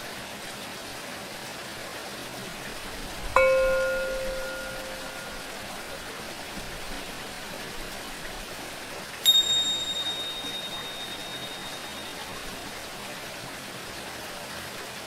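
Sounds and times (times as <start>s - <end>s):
cymbals ringing: 3.4s - 5.8s, 9.2s - 12.7s.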